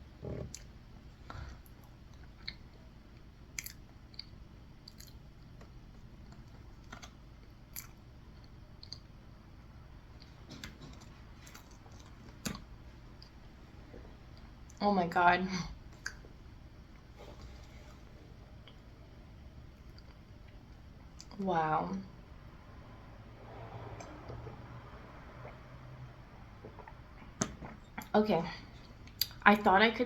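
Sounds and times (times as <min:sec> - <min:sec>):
person chewing: 0:03.5 - 0:05.5.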